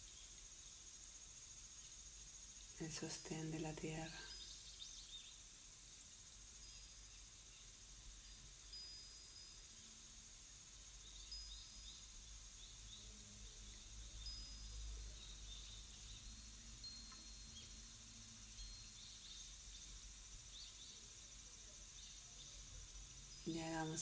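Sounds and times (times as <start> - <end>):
steady hiss: 0.0 - 24.0.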